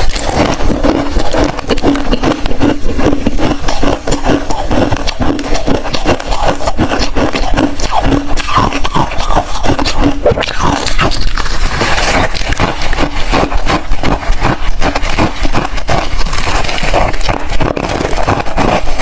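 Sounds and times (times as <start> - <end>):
person chewing ice: 0.0 - 19.0.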